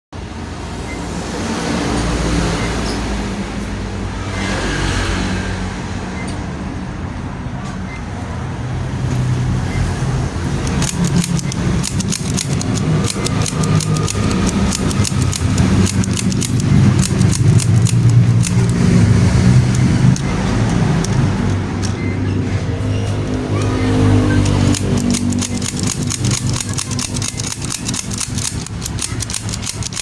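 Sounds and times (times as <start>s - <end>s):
toy pistol clicking: 10.6s - 22.0s, 24.4s - 30.0s.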